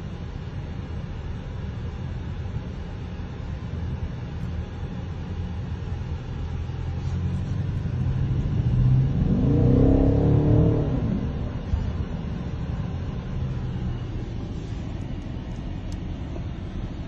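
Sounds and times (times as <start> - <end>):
car exhaust rumbling and revving: 6.0 - 17.0.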